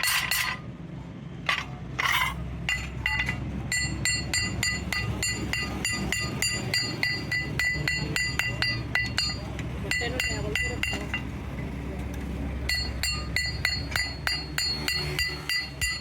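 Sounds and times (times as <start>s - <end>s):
metal ringing clinks: 1.5s - 11.3s.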